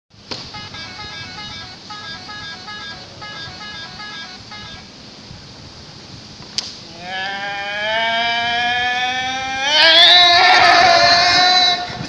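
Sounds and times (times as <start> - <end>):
multi-tone musical bus horn: 0.5 - 5.0.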